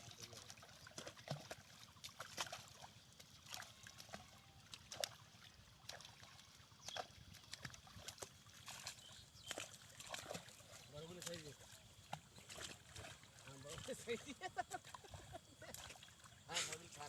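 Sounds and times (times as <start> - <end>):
water splashing and dripping: 0.0 - 17.0
water trickling: 0.0 - 17.0.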